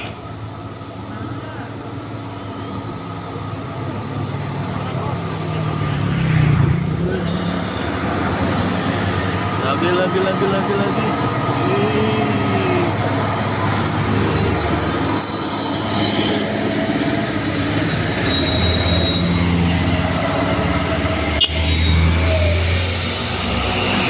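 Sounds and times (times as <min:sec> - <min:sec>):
bus diesel engine droning: 0:00.0 - 0:24.0
high-pitched whine: 0:00.0 - 0:24.0.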